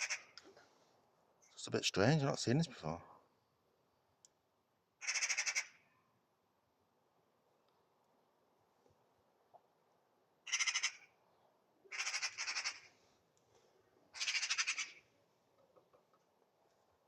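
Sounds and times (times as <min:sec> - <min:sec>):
magpie harsh rattling chatter: 0:00.0 - 0:00.3, 0:05.0 - 0:05.7, 0:10.5 - 0:11.0, 0:11.9 - 0:12.9, 0:14.2 - 0:15.0.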